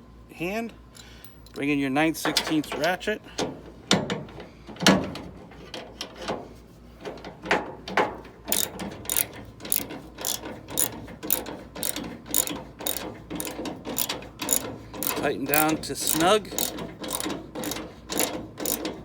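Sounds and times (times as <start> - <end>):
ratchet wrench clicking: 8.5 - 19.0.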